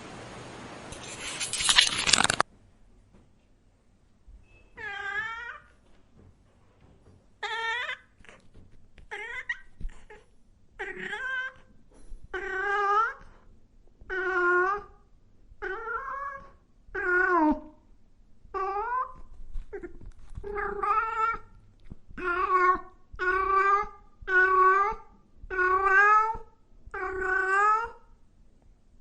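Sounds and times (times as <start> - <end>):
cat meowing: 4.8 - 5.8, 7.4 - 11.7, 14.1 - 15.0, 15.6 - 17.8, 18.6 - 21.6, 22.2 - 28.1.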